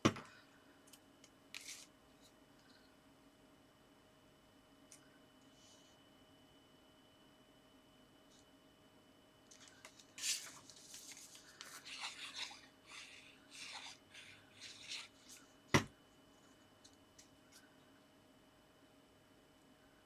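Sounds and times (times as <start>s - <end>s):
paper and card rustling: 1.6s - 1.9s, 9.5s - 15.5s.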